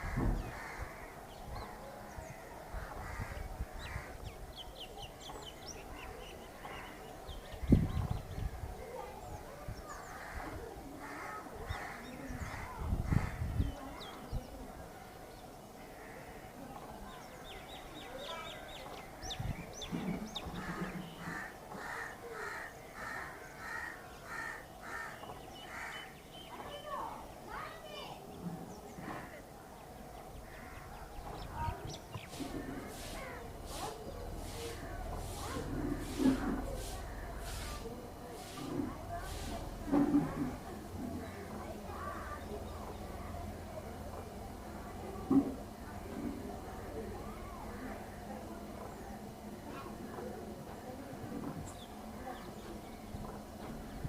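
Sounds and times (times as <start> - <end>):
crows cawing: 0.0 - 1.2, 20.6 - 26.1
small birds chirping: 0.0 - 38.5.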